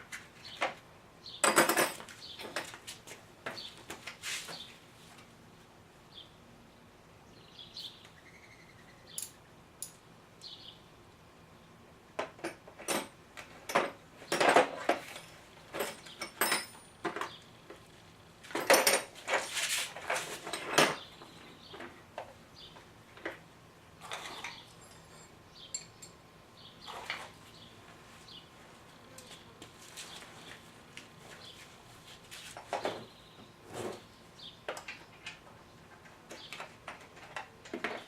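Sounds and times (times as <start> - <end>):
metal objects clinking: 13.7 - 17.2.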